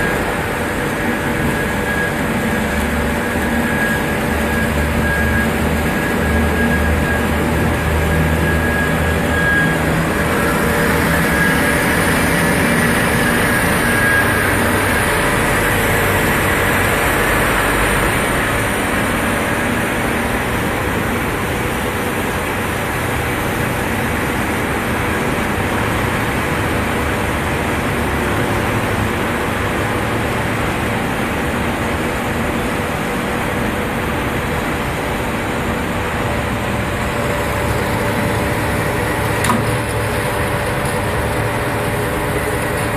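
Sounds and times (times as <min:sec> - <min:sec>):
band saw running: 0:00.0 - 0:20.6.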